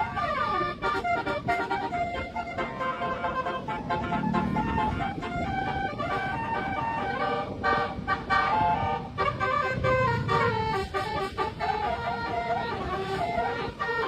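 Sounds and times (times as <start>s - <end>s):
low vehicle rumble: 0.0s - 14.0s
multi-tone bus horn melody: 0.0s - 14.0s.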